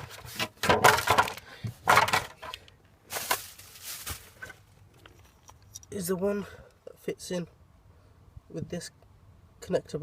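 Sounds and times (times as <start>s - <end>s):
hands rummaging through wiring: 0.0s - 5.9s.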